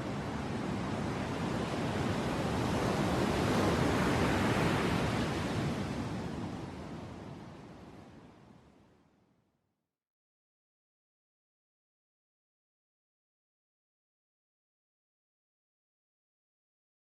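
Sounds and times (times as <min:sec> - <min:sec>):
ocean surf washing: 0:00.0 - 0:08.0.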